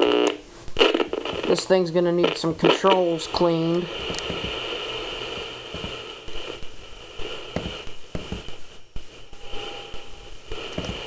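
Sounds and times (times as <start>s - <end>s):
crackles and clicks: 0.0s - 11.0s
radio static hiss: 0.0s - 11.0s
faint steady tone: 3.6s - 11.0s.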